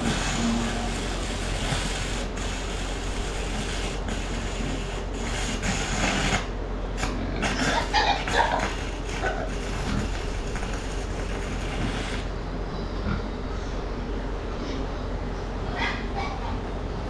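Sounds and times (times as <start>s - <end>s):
arc welding crackle: 0.0s - 12.4s.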